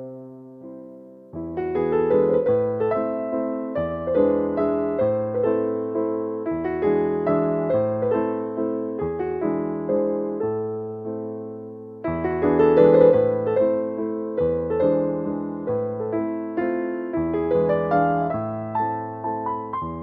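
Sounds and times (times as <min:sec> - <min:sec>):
electric piano music: 0:00.0 - 0:20.0.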